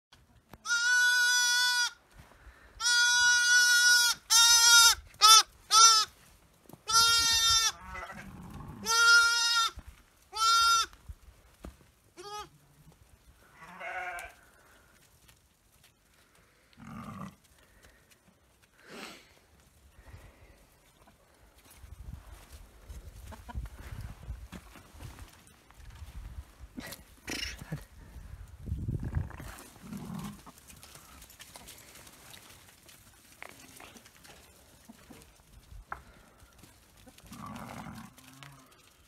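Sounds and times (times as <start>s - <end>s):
goat bleating: 0.6s - 2.0s, 2.8s - 6.1s, 6.8s - 11.0s, 12.2s - 12.5s, 13.6s - 14.4s.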